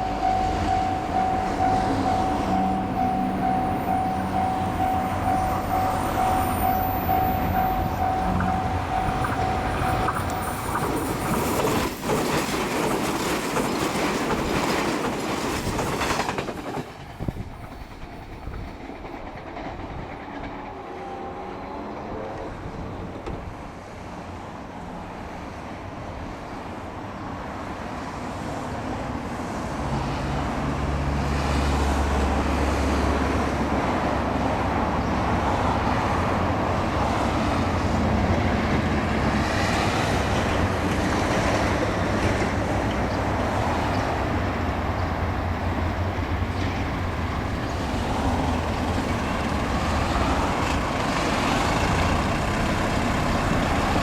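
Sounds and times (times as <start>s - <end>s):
vehicle engine rumbling: 0.0s - 11.9s.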